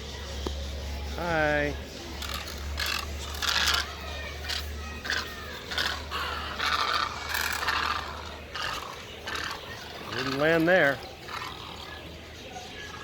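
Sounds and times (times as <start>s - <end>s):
flamingos honking: 2.2s - 12.1s.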